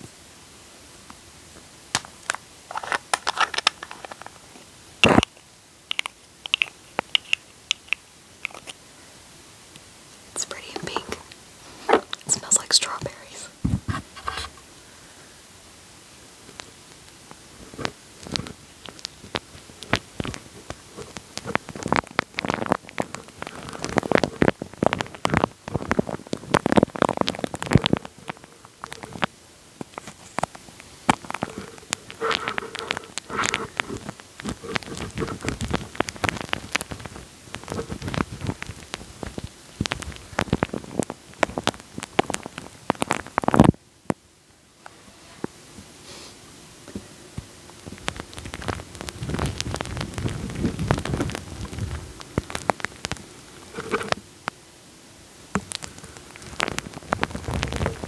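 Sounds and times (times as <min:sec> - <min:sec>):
wet sticky crackling on microphone: 0:02.0 - 0:08.8, 0:16.6 - 0:43.8, 0:47.8 - 0:54.2, 0:55.6 - 0:58.0.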